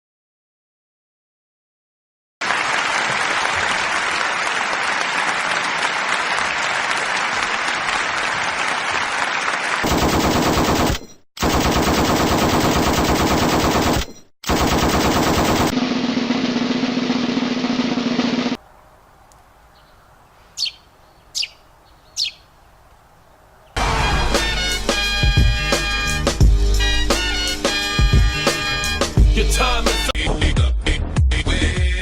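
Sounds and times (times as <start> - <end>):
rapid gunfire-like rattling: 9.8 - 18.6.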